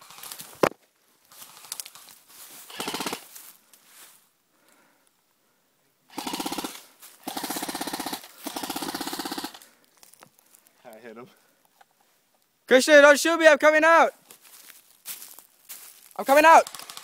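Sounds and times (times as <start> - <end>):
airsoft rifle full-auto bursts: 2.7 - 3.3, 6.1 - 9.7, 16.4 - 17.0.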